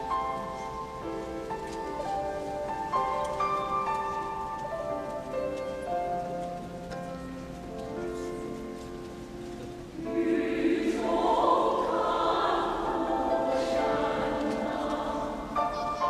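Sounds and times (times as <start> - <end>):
choir singing in a church: 9.9 - 16.0.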